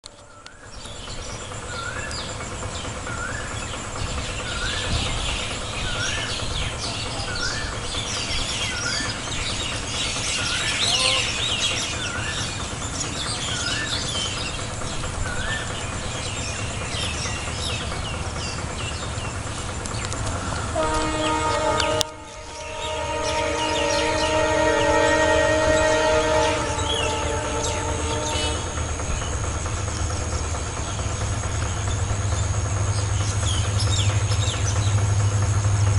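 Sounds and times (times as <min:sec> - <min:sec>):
birds and insects chirping: 0:00.0 - 0:35.9
steady low rumble: 0:00.0 - 0:35.9
chord of held tones: 0:20.7 - 0:28.9.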